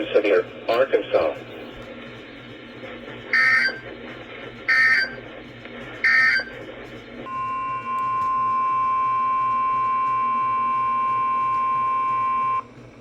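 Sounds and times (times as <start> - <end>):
steady warning alarm tone: 3.3 - 4.0, 4.6 - 12.7
screeching data bursts: 3.4 - 3.8, 4.7 - 5.2, 6.0 - 6.5.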